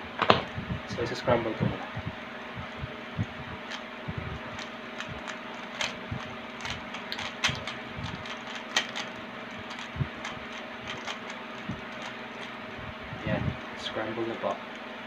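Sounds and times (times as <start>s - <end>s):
steady low room hum: 0.0s - 15.0s
puzzle cube plastic clicks: 4.5s - 6.0s, 6.6s - 12.5s.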